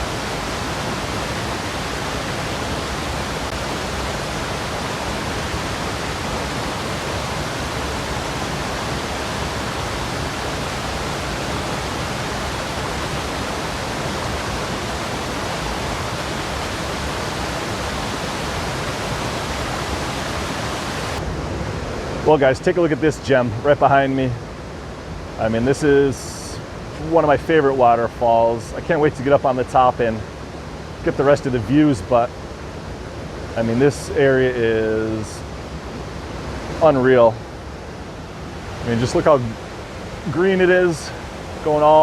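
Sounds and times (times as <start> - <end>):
waterfall rushing: 0.0 - 21.3, 32.1 - 42.0.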